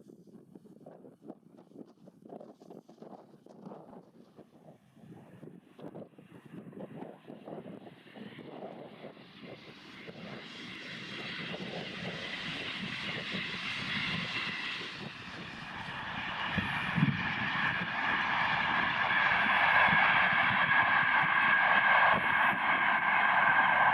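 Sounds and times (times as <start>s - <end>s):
train rumbling and whining: 4.8s - 23.9s.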